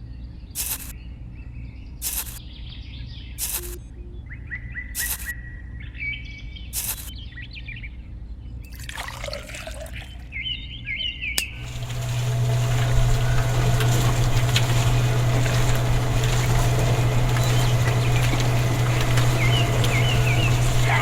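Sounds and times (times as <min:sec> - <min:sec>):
small birds chirping: 0:00.1 - 0:08.6, 0:10.0 - 0:21.0
sharp clicks: 0:00.6 - 0:00.9, 0:02.0 - 0:02.4, 0:03.4 - 0:03.9, 0:05.0 - 0:05.3, 0:06.8 - 0:07.1
steady low hum: 0:11.4 - 0:21.0.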